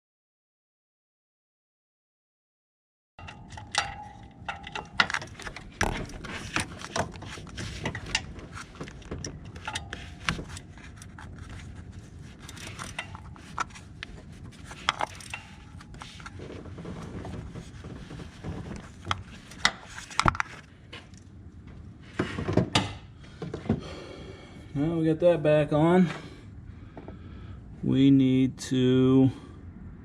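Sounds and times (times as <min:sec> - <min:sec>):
metallic ring: 0:03.2 - 0:05.3
hand tools clinking on metal: 0:03.2 - 0:05.4.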